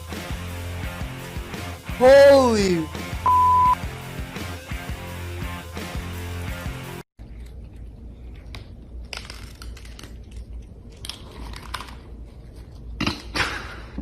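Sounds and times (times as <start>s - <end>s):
crunching and crackling: 7.2s - 12.8s.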